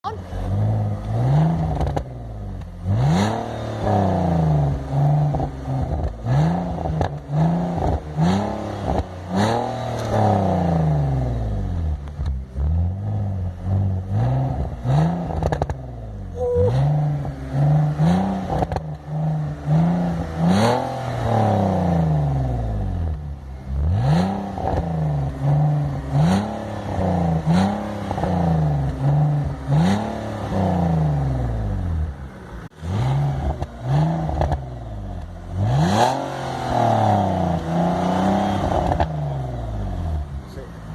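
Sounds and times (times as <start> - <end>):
car engine revving: 0.0 - 40.9
exhaust pops and crackles: 1.0 - 2.8, 5.3 - 8.0, 11.9 - 12.7, 15.2 - 15.9, 18.5 - 19.1, 33.5 - 35.5, 38.7 - 39.3.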